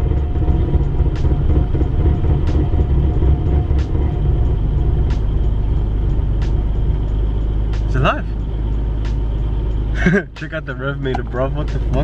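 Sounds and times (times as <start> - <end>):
car engine idling roughly: 0.0 - 12.0.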